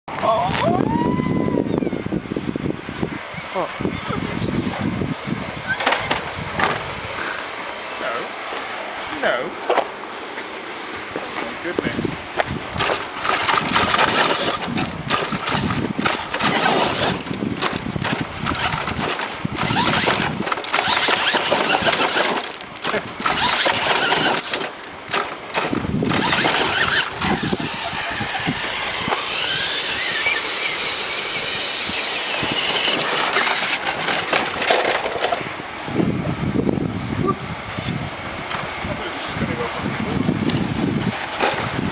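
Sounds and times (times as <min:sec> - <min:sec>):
remote-control truck motor whining: 0:12.8 - 0:35.4.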